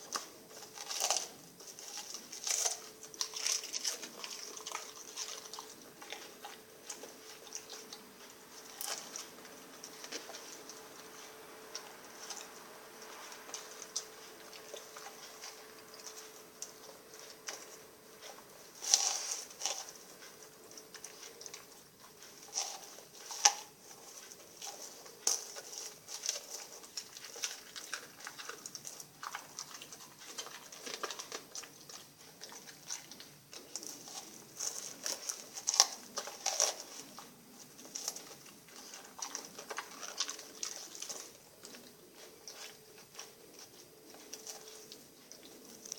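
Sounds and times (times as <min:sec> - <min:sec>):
dog chewing and crunching: 0:00.0 - 0:45.9.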